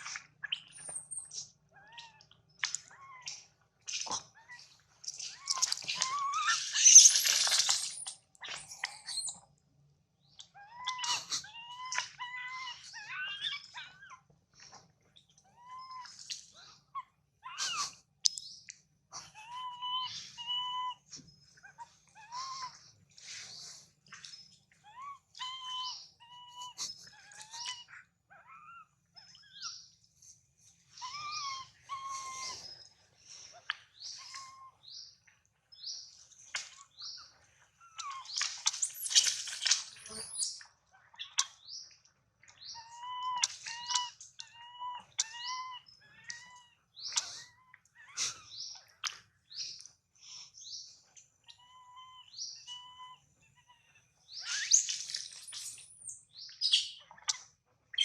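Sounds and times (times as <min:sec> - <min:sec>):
baby monkey squeaky calls: 0:05.2 - 0:09.4, 0:10.6 - 0:14.2, 0:17.4 - 0:18.5, 0:19.2 - 0:22.8, 0:24.3 - 0:29.8, 0:30.9 - 0:32.8, 0:34.0 - 0:35.0, 0:37.9 - 0:41.6, 0:42.6 - 0:49.7, 0:51.5 - 0:58.0.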